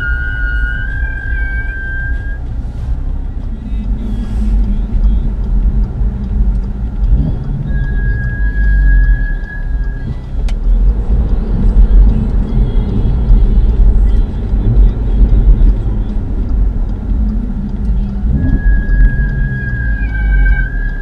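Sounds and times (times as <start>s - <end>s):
high-pitched brake squeal: 0.0s - 2.8s, 7.1s - 10.3s, 18.0s - 21.0s
car rolling road rumble: 0.0s - 21.0s.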